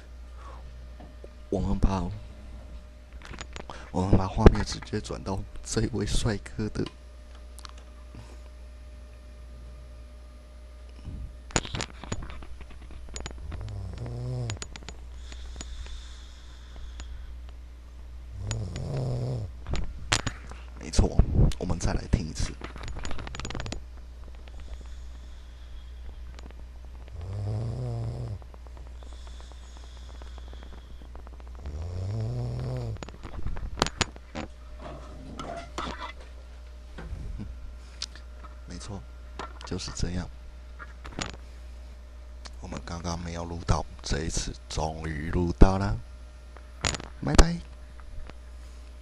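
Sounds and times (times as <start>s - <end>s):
man snoring: 13.6s - 14.6s, 18.4s - 19.5s, 27.1s - 28.4s, 29.0s - 31.0s, 31.6s - 33.0s
breathy hiss: 15.1s - 17.5s, 24.4s - 33.0s.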